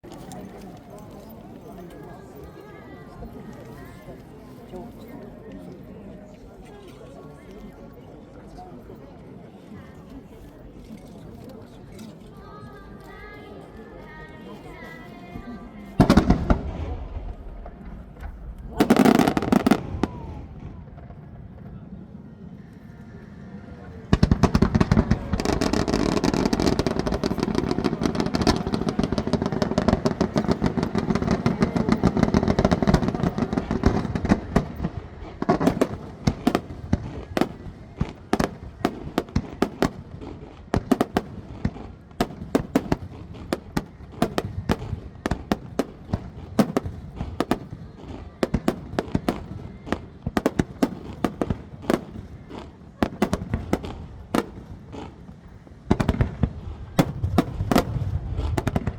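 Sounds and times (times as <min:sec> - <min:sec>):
fireworks booming and crackling: 0:15.6 - 0:22.1, 0:24.0 - 0:58.9
sharp fireworks bangs: 0:16.0 - 0:21.2, 0:24.1 - 0:58.9.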